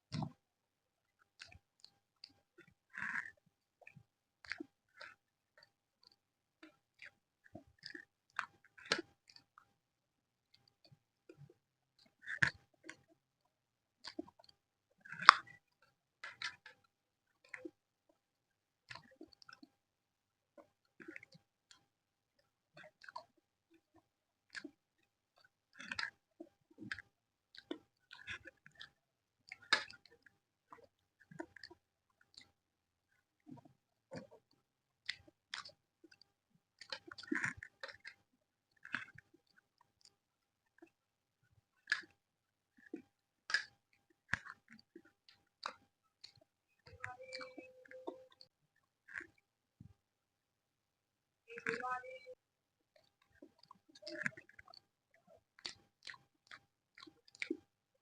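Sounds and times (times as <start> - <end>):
close chewing with mouth clicks: 0.1 - 0.4, 1.4 - 9.7, 10.4 - 18.2, 18.8 - 19.7, 20.6 - 41.0, 41.7 - 50.0, 52.3 - 57.8
chewing with wet mouth smacks: 25.4 - 32.5, 38.8 - 41.0, 41.8 - 42.1, 42.8 - 49.4, 53.0 - 57.7.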